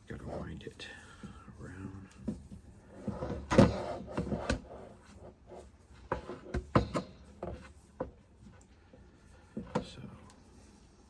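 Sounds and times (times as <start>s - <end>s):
power cord handling knocks and rustles: 2.2s - 4.7s, 6.1s - 8.2s.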